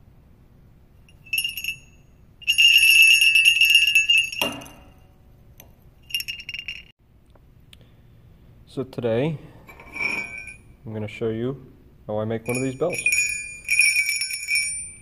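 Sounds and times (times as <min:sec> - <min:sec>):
jingle bell shaken: 0:01.1 - 0:04.9, 0:06.0 - 0:06.9, 0:12.5 - 0:15.0.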